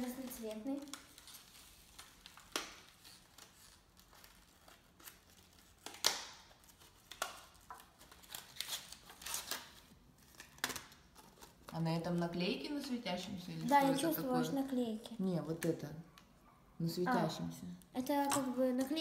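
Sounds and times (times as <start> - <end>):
plastic packaging clicks and crinkles: 0.0 - 12.3.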